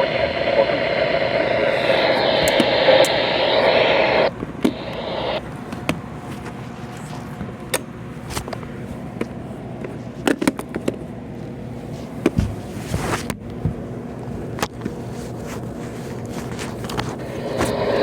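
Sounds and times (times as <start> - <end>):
radio static hiss: 0.0 - 5.4, 17.2 - 18.0.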